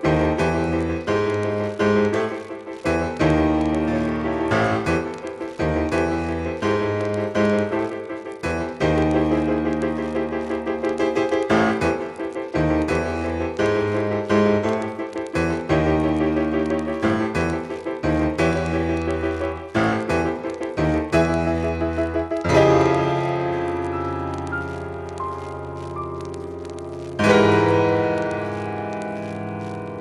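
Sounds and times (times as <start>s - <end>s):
piano chords: 0.0s - 30.0s.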